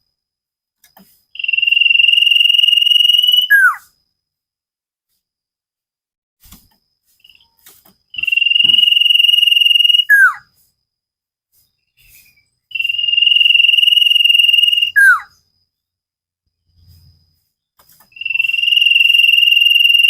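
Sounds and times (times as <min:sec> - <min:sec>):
bird trilled whistle song: 0:01.4 - 0:03.9, 0:07.2 - 0:10.5, 0:11.6 - 0:15.5, 0:18.1 - 0:20.0.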